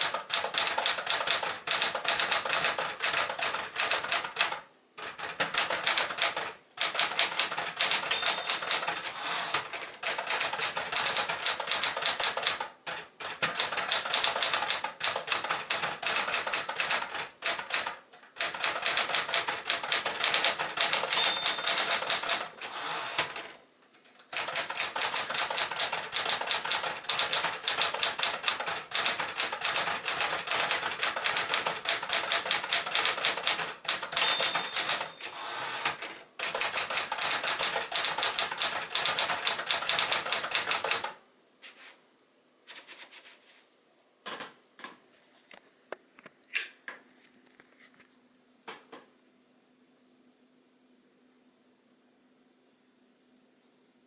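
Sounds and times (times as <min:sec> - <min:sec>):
typewriter key strikes: 0:00.0 - 0:22.5, 0:24.4 - 0:35.3, 0:35.9 - 0:41.2
typewriter margin bell ringing: 0:05.6 - 0:09.1, 0:18.5 - 0:22.5, 0:24.4 - 0:35.4.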